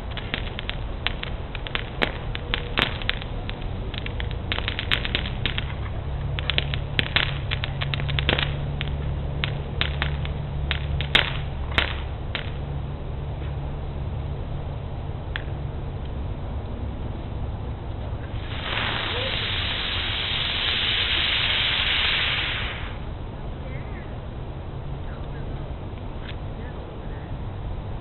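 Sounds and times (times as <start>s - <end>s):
firework bangs: 0.0s - 12.7s, 18.2s - 23.1s
fireworks cracking and popping: 0.0s - 13.6s, 18.0s - 23.1s
steady low rumble: 0.0s - 28.0s.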